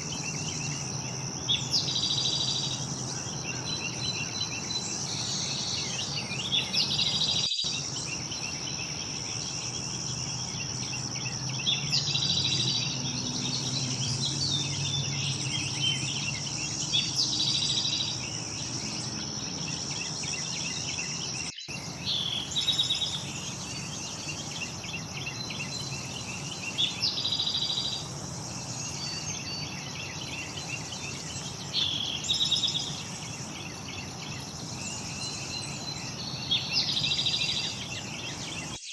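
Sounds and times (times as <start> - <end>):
high-pitched insect drone: 0.0 - 38.9
songbirds chirping: 0.0 - 38.9.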